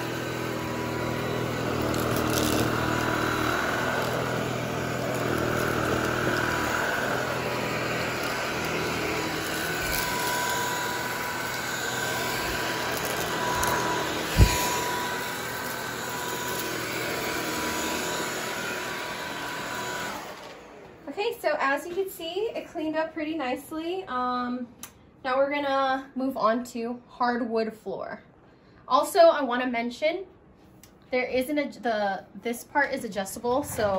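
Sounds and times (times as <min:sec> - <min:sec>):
vacuum cleaner running on carpet: 0:00.0 - 0:21.3, 0:33.4 - 0:33.9.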